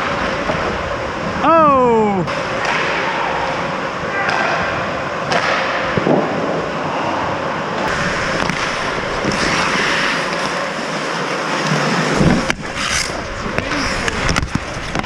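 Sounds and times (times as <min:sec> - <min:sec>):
skates scraping on ice: 0:07.8 - 0:15.0
hockey stick knocks: 0:08.4 - 0:10.6, 0:12.2 - 0:15.0.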